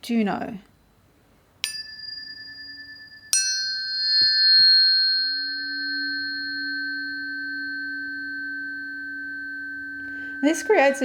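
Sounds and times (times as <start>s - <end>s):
low steady hum: 0.0s - 11.0s
higher tuning fork sounding: 1.6s - 11.0s
tuning fork ringing: 1.6s - 11.0s.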